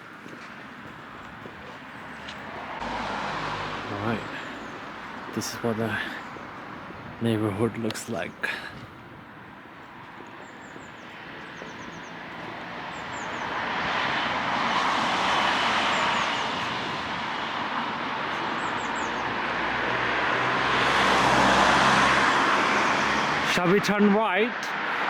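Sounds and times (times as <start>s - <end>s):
vehicle passing: 0.8s - 8.8s, 9.4s - 25.0s
small birds chirping: 4.0s - 13.7s, 17.5s - 20.6s.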